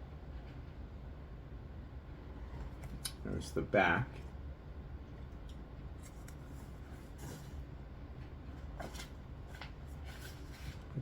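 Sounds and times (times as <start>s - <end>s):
faint low hum: 0.0s - 11.0s
paper covers rustling and scraping: 8.6s - 11.0s.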